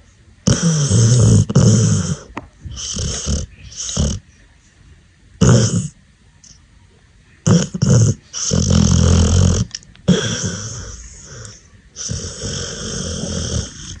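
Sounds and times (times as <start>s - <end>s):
puppy snoring: 0.4s - 4.2s, 5.4s - 6.0s, 7.4s - 14.0s.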